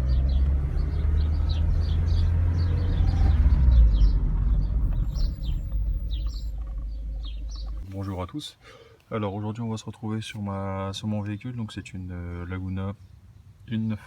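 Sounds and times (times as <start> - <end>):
car engine rumbling: 0.0 - 8.2
birds chirping: 0.0 - 14.0.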